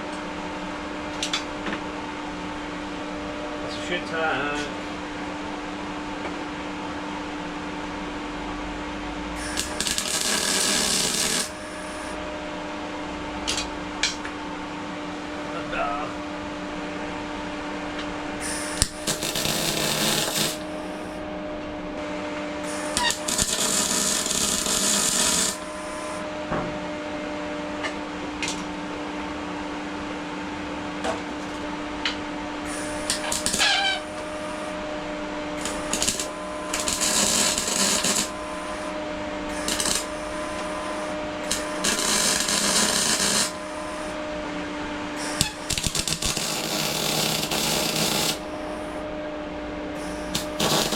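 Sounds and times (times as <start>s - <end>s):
welder hum: 9.2s - 14.2s, 18.4s - 21.4s, 22.6s - 26.4s, 32.6s - 49.2s, 49.9s - 50.9s
welding arc crackling and hissing: 9.4s - 12.2s, 18.4s - 21.2s, 22.7s - 26.2s, 32.7s - 34.8s, 35.6s - 44.2s, 45.2s - 48.9s, 50.0s - 50.9s.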